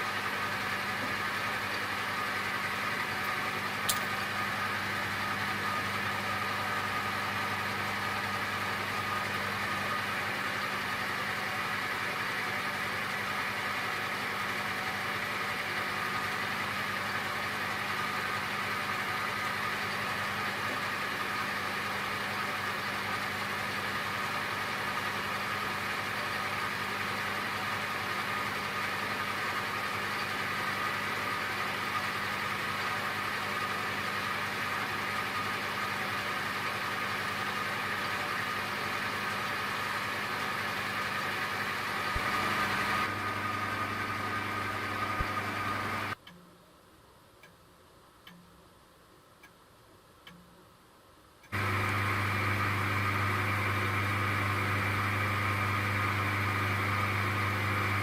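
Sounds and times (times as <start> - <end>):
machine motor humming: 37.7 - 46.2, 51.5 - 58.0
faint clicks: 47.4 - 47.6, 48.2 - 48.6, 50.2 - 50.6.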